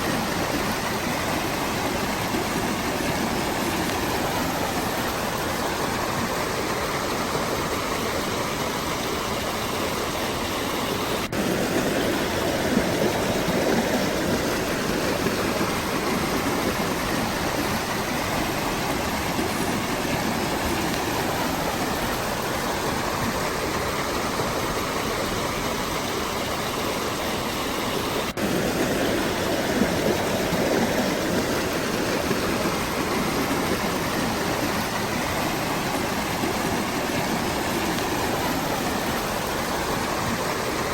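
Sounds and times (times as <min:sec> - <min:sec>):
waterfall rushing: 0:00.0 - 0:40.9.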